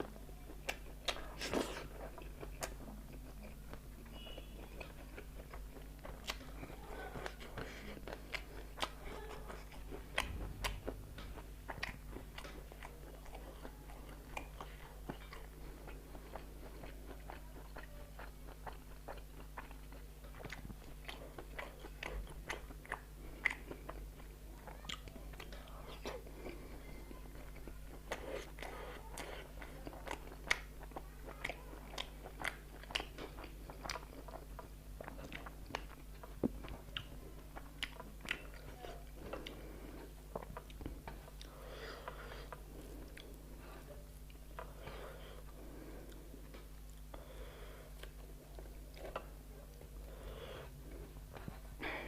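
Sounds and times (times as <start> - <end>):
steady low hum: 0.0 - 52.0
wet chewing and crunchy bites: 0.6 - 43.5.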